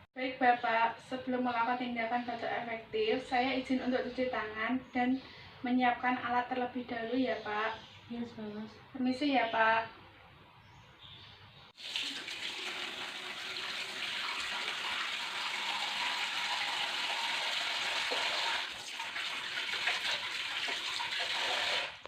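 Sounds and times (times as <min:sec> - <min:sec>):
tap water running into sink: 0:11.8 - 0:22.0.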